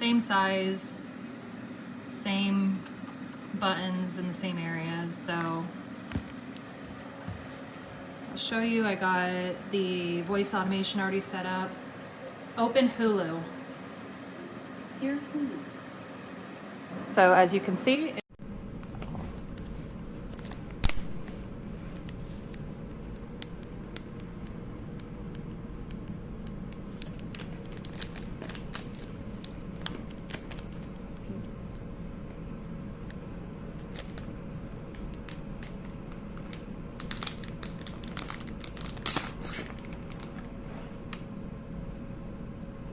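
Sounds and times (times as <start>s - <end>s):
steady low hum: 0.0s - 42.9s
crinkly handling noise: 18.8s - 24.5s, 26.7s - 31.3s, 33.7s - 41.3s.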